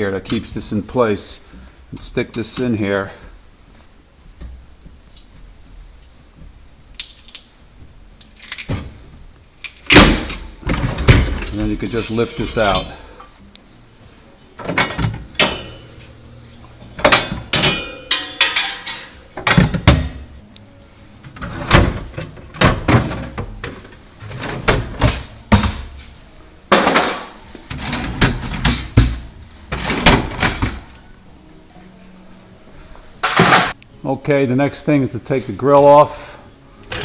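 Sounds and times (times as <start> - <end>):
knocking and clattering of fridge parts: 9.9 - 11.8, 14.6 - 15.9, 17.0 - 20.3, 21.3 - 26.0, 26.7 - 31.0.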